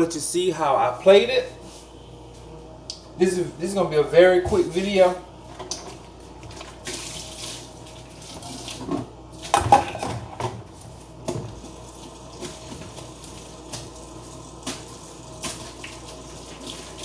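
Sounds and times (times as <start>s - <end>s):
dishes and utensils clattering: 8.4s - 10.6s.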